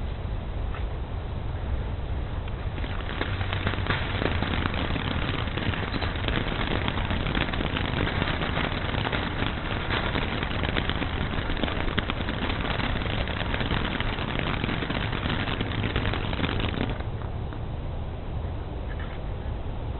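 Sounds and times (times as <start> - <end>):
fireworks crackling: 2.5 - 17.4.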